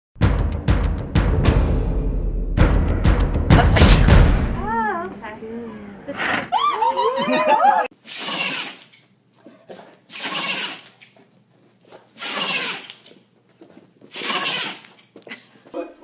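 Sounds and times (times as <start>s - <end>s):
wavering animal cry: 4.6s - 8.7s, 10.1s - 10.9s, 14.2s - 14.8s.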